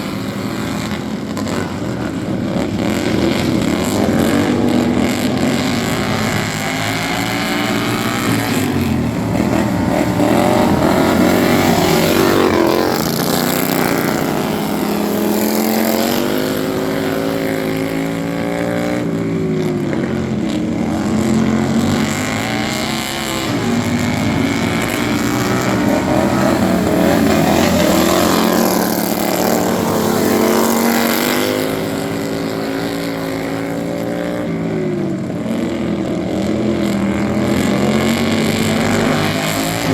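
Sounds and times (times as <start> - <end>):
racing lawn mower engines: 0.0 - 39.9.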